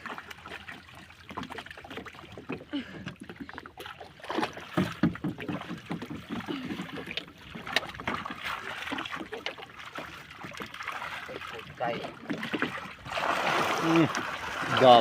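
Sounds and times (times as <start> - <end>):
water sloshing and splashing: 0.0 - 15.0
knocks and clatter: 4.7 - 6.8.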